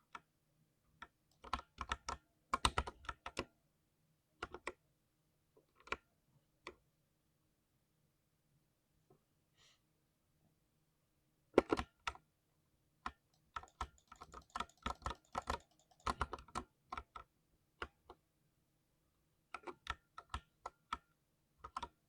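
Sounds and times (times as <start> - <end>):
keyboard key clicks: 13.1 - 17.2.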